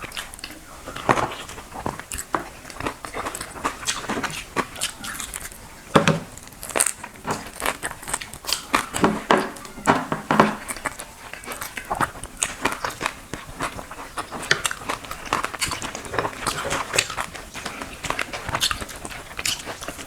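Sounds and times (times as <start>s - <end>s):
chewing with crunches: 0.0s - 20.0s.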